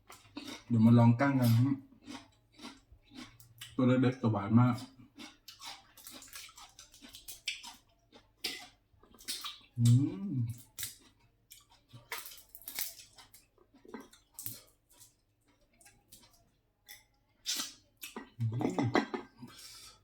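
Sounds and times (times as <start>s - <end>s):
person humming: 9.8s - 10.6s.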